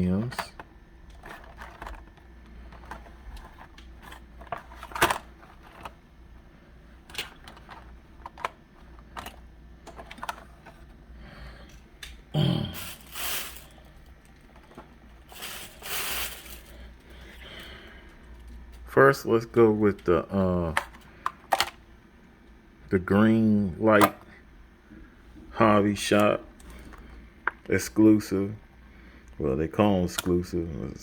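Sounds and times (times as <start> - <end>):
person humming: 12.4 - 13.0.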